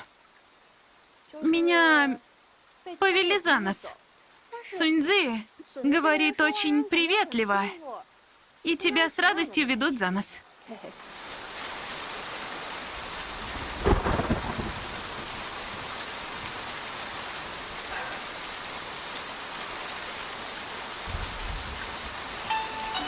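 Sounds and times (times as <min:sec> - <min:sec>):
heavy rain: 0:00.0 - 0:23.0
low thunder rumble: 0:13.4 - 0:15.9
sharp thunder crack: 0:13.5 - 0:15.4.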